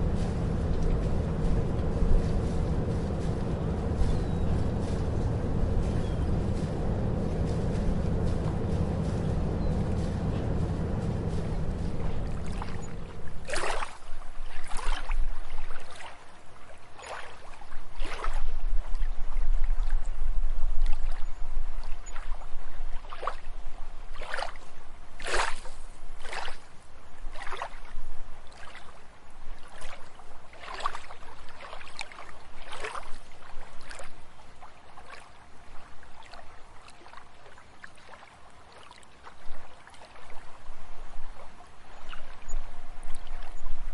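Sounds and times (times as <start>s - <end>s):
low rumble: 0.0s - 14.9s
water splashing and sloshing: 0.0s - 43.9s.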